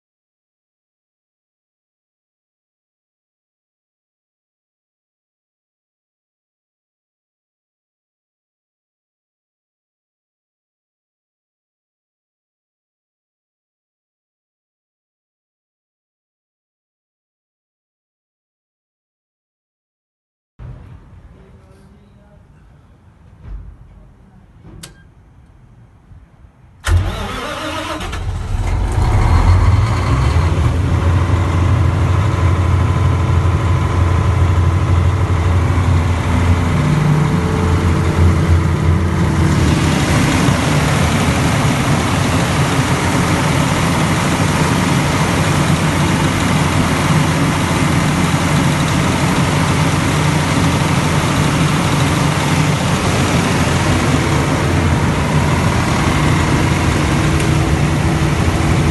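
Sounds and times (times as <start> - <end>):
diesel generator running: 26.8 - 58.9.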